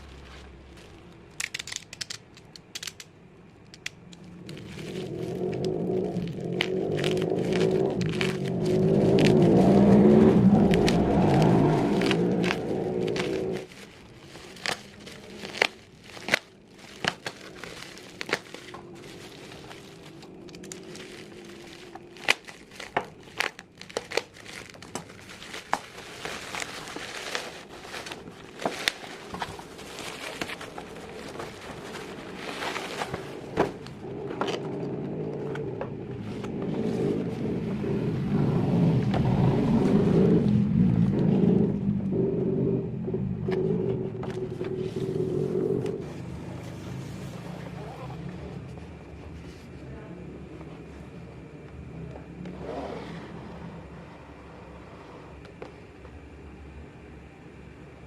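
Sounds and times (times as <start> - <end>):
plastic packaging crinkling: 0.0 - 34.8
low rumble: 0.0 - 52.6
plastic toy parts clicking: 1.3 - 4.3.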